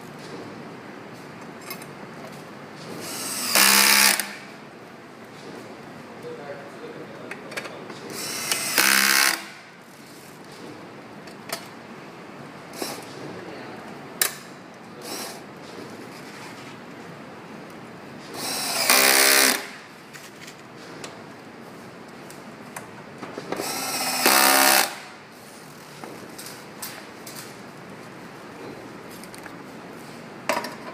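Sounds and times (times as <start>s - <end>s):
electric screwdriver whirring: 3.0s - 4.4s, 8.2s - 9.5s, 18.4s - 19.7s, 23.6s - 25.0s.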